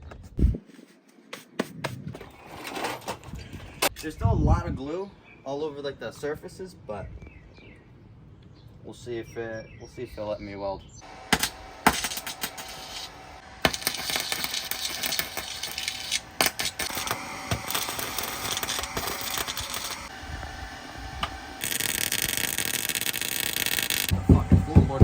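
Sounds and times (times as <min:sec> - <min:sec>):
arc welding crackle: 0:11.3 - 0:24.2.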